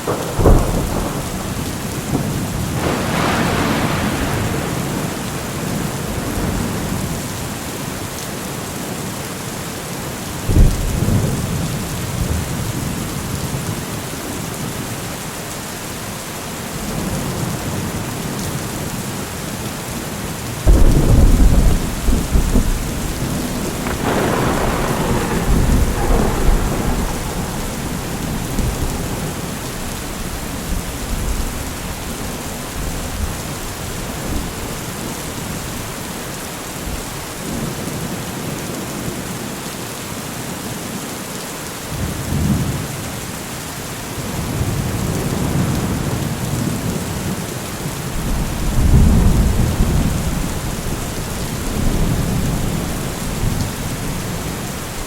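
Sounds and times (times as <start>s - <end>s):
rolling thunder: 0.0s - 7.9s, 10.5s - 13.8s, 20.6s - 39.2s, 48.1s - 55.0s
steady rain: 0.0s - 55.0s.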